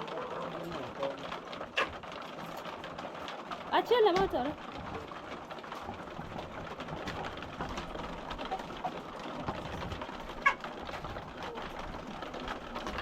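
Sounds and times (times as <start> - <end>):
hens pecking: 0.0 - 13.0.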